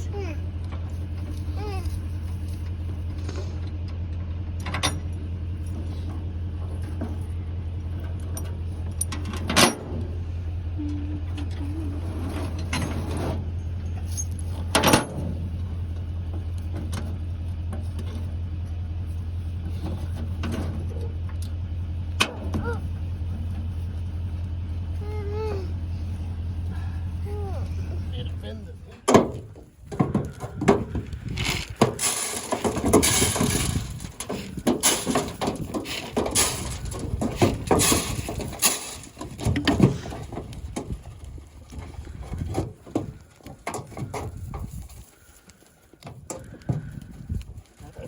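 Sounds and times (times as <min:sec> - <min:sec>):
diesel engine idling: 0:00.0 - 0:48.0
metallic clanks: 0:29.0 - 0:44.9.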